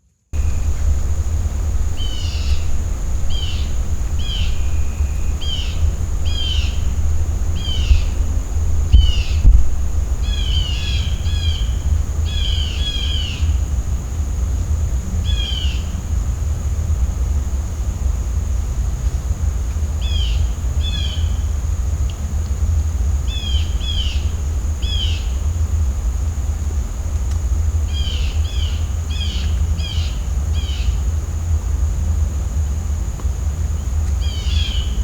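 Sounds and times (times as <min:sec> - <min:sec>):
songbird calling: 0:00.4 - 0:13.6, 0:34.2 - 0:35.0
thin high drone: 0:00.4 - 0:14.9
steady low rumble: 0:00.4 - 0:35.0.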